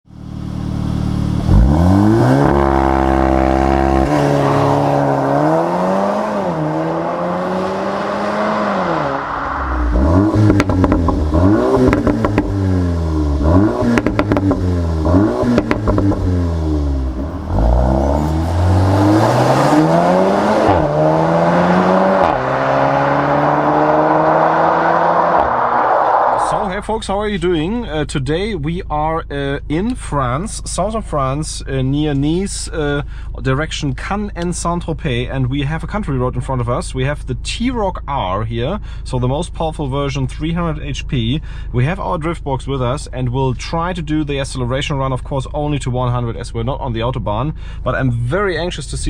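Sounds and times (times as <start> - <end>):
car engine revving and accelerating: 0.2 - 26.6
exhaust crackles: 0.2 - 33.4.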